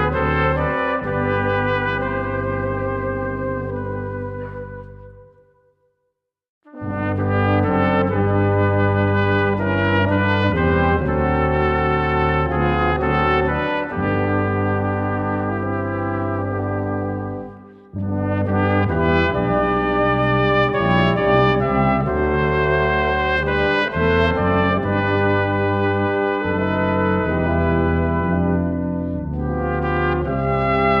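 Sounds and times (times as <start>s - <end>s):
brass ensemble playing a hymn: 0.0s - 5.3s, 6.8s - 31.0s.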